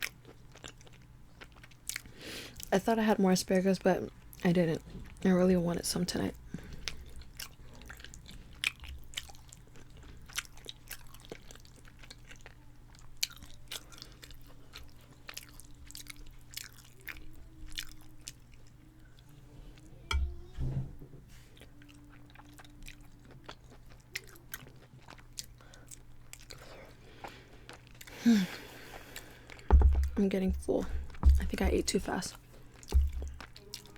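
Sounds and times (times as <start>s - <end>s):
wet chewing clicks and smacks: 0.0s - 2.7s, 6.8s - 18.8s, 21.8s - 30.2s, 32.1s - 33.9s
faint steady hum: 0.0s - 33.9s
low thumps: 29.7s - 32.1s, 32.9s - 33.4s.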